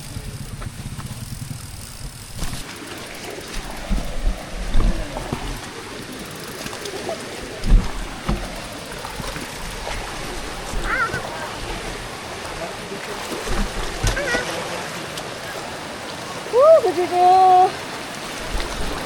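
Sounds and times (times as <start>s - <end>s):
bike rushing noise: 0.0s - 14.8s
bike knocking over ground: 7.6s - 9.3s, 13.4s - 14.4s.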